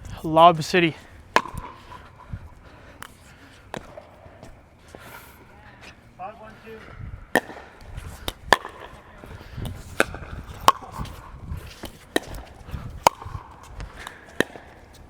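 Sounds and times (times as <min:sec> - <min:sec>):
paddles striking ball: 0:01.3 - 0:02.2, 0:03.0 - 0:04.0, 0:07.3 - 0:15.0
footsteps thudding: 0:03.7 - 0:05.1.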